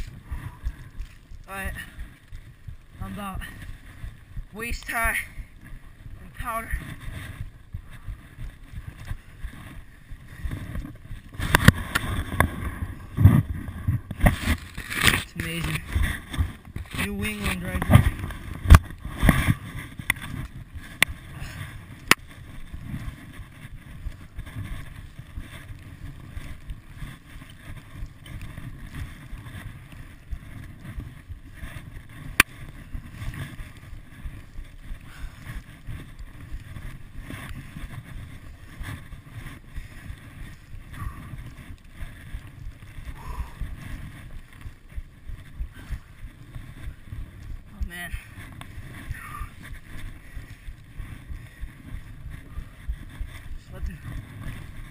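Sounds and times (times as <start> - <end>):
blizzard wind buffeting microphone: 0.0 - 54.9.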